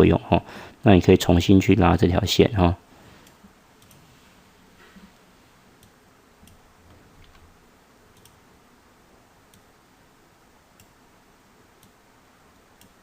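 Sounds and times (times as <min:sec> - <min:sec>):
steady low hiss: 0:00.0 - 0:13.0
faint mouse clicks: 0:03.2 - 0:04.0, 0:08.1 - 0:08.4, 0:10.8 - 0:11.0, 0:11.8 - 0:12.0, 0:12.8 - 0:13.0.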